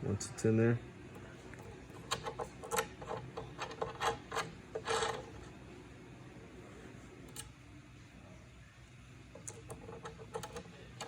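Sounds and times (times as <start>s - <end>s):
metal fittings clicking and scraping: 1.9s - 5.4s, 9.4s - 11.0s.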